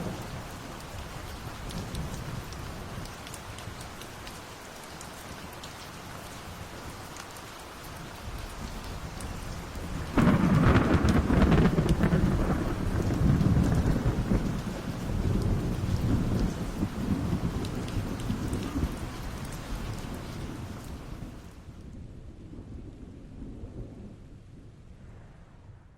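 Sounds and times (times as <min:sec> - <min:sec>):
steady rain: 0:00.0 - 0:25.8
thunder crack and rumble: 0:08.4 - 0:25.9.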